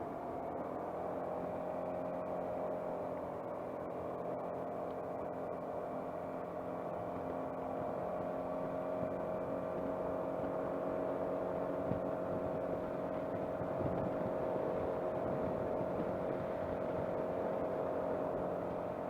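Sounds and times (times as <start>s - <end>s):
scooter engine running: 0.0s - 19.0s.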